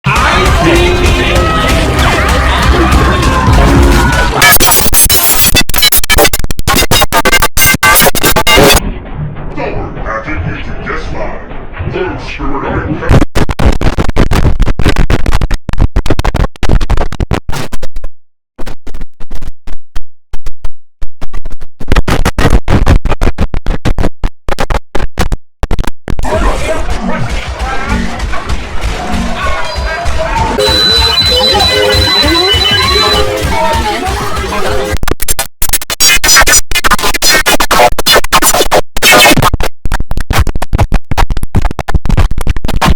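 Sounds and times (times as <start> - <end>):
stuttering chopped audio: 0.1 - 9.5, 13.0 - 42.9
distorted stuttering computer chime: 4.4 - 8.8, 30.6 - 35.0.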